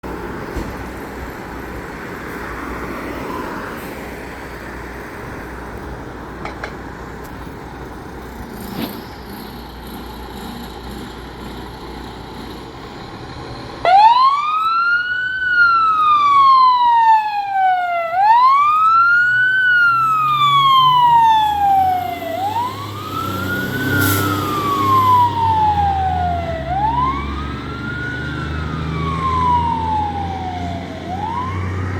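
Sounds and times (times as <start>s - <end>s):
street noise: 0.0s - 31.9s
truck engine rumbling: 0.0s - 31.9s
fire engine siren wailing: 2.4s - 4.6s, 13.8s - 31.9s.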